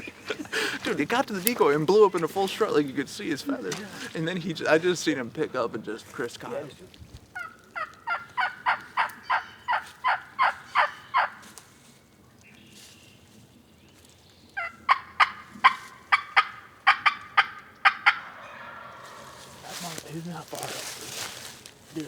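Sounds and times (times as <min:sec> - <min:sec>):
wild turkey yelping: 0:07.3 - 0:11.6, 0:14.6 - 0:20.9.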